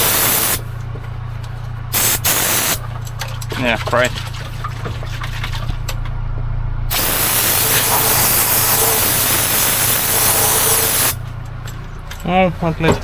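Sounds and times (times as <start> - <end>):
spray can hissing: 0.0 - 0.7, 1.9 - 2.8, 6.9 - 11.2.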